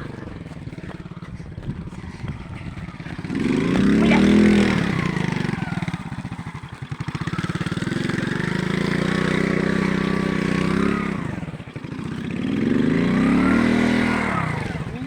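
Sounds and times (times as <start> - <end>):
moped engine revving: 0.0 - 15.0.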